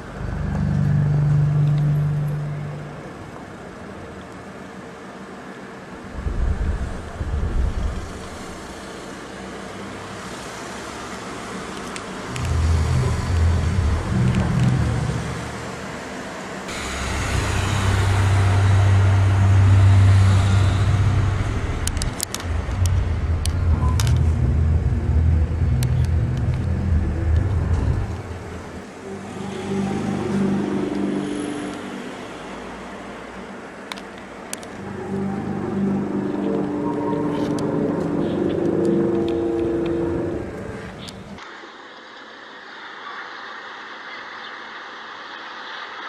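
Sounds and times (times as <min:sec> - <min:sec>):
low rumbling drone: 0:00.0 - 0:03.7, 0:06.0 - 0:09.5, 0:12.2 - 0:41.4.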